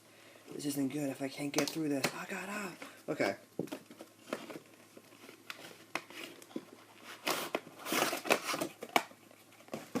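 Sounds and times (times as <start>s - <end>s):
cardboard box tearing and rustling: 7.1s - 9.0s.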